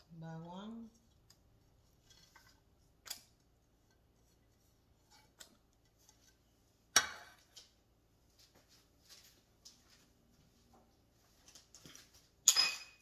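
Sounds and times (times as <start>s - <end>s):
sharp ringing clink: 12.5s - 13.0s.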